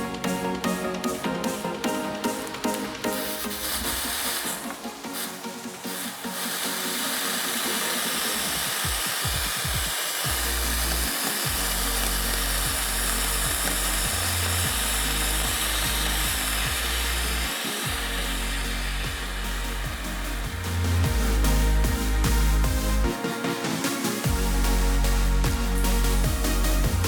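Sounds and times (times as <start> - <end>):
music with heavy bass line: 0.0 - 27.0
harsh hiss: 2.6 - 21.8.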